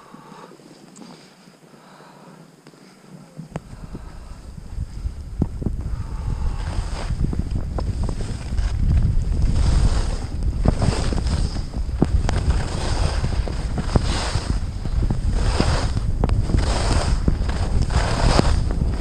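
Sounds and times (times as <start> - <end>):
wind buffeting microphone: 3.4 - 19.0
hiss of sliding over snow: 5.9 - 7.2, 9.5 - 19.0.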